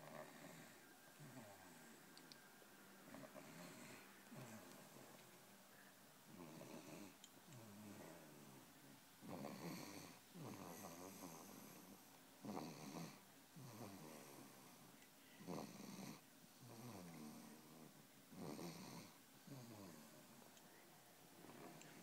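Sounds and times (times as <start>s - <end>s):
baby snoring: 9.2s - 14.5s, 15.4s - 17.7s, 18.3s - 20.1s.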